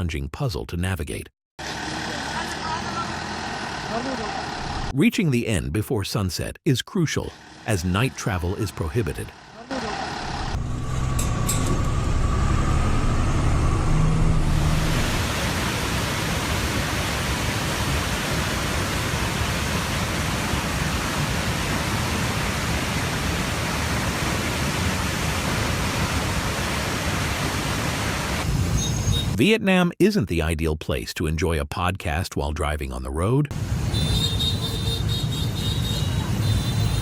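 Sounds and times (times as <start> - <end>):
low vehicle engine rumble: 9.4 - 15.4.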